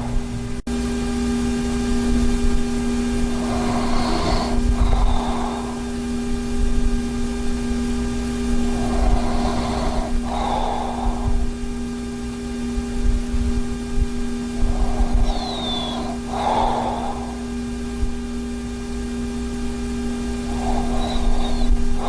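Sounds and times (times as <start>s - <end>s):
man breathing slowly in sleep: 0.0s - 0.4s, 3.2s - 7.0s, 8.3s - 12.0s, 13.0s - 18.4s, 19.7s - 22.0s
steady hum: 0.0s - 22.0s.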